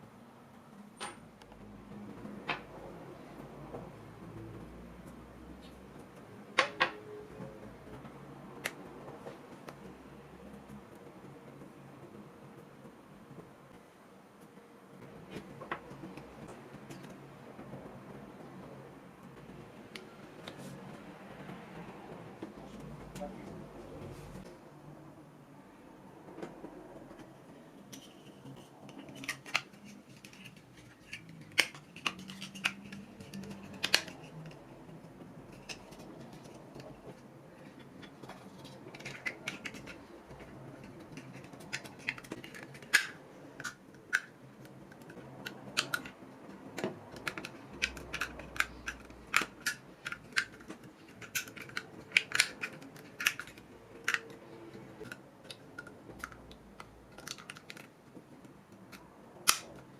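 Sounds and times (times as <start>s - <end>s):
toy parts clicking and tapping: 27.9s - 46.2s, 46.8s - 59.9s.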